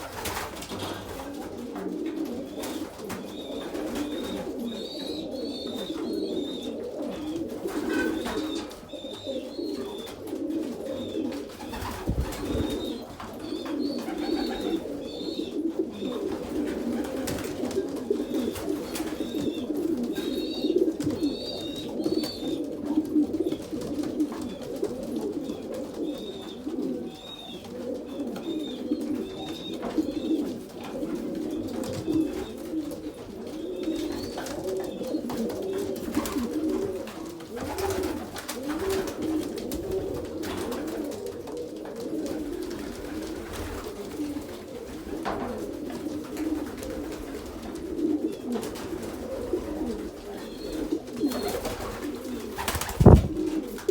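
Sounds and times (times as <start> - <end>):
pigeons cooing: 0.0 - 53.9.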